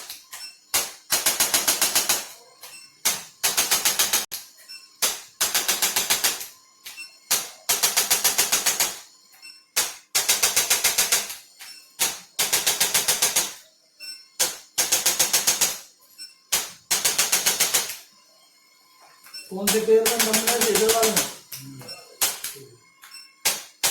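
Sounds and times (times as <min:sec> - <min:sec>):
rapid sharp clicks of adjusting tool: 0:00.0 - 0:02.3, 0:03.0 - 0:09.0, 0:09.8 - 0:11.4, 0:12.0 - 0:13.6, 0:14.4 - 0:15.8, 0:16.5 - 0:18.0, 0:19.6 - 0:21.4, 0:22.2 - 0:22.6.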